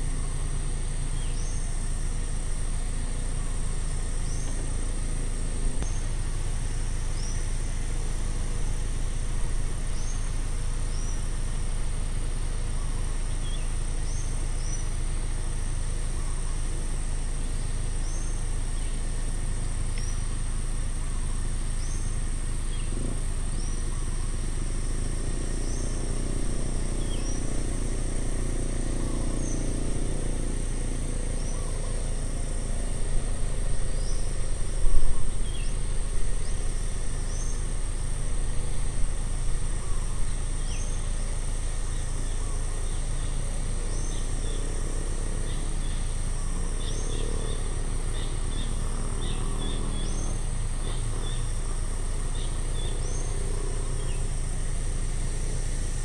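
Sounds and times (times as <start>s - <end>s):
high insect drone: 0.0s - 56.0s
vehicle passing: 24.5s - 39.8s.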